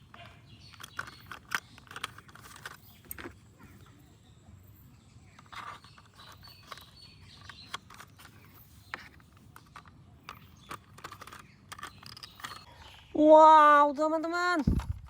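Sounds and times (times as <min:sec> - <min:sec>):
plastic toy parts clicking: 0:00.0 - 0:03.4, 0:05.3 - 0:12.7.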